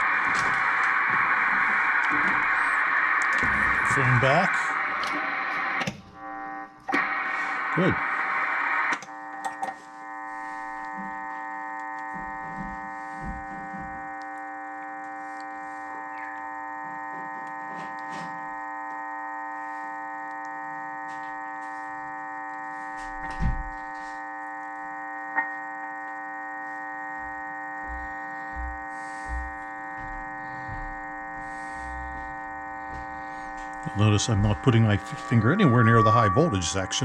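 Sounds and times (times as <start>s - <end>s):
steady buzzing hum: 0.0s - 37.0s
soft low thumps: 27.9s - 33.6s.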